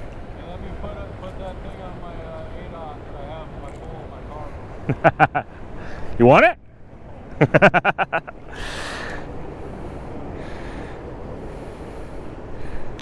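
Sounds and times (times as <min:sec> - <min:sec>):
outdoor background noise: 0:00.0 - 0:13.0
rapid laughter: 0:04.9 - 0:05.5, 0:07.4 - 0:08.4
breathy exhale: 0:05.6 - 0:06.2, 0:08.5 - 0:13.0.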